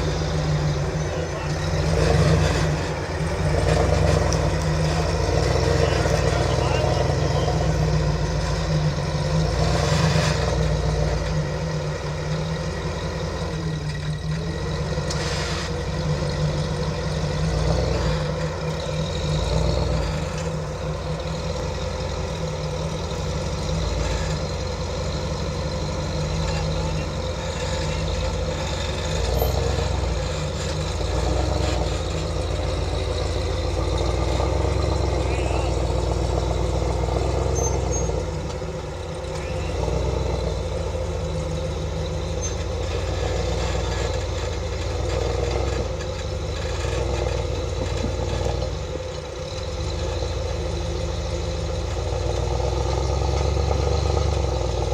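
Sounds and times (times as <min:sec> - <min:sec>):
low engine drone: 0:00.0 - 0:54.9
tyres on rough terrain: 0:00.0 - 0:54.9.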